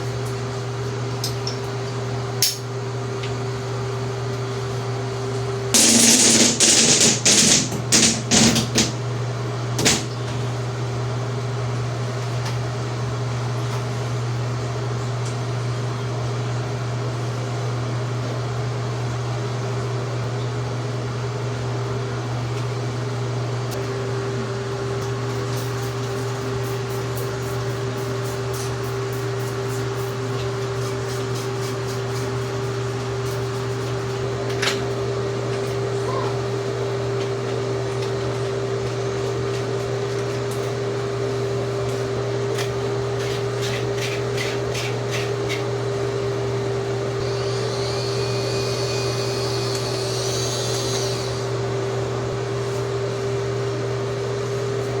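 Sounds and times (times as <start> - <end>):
electric scrubber motor humming: 47.2 - 51.6.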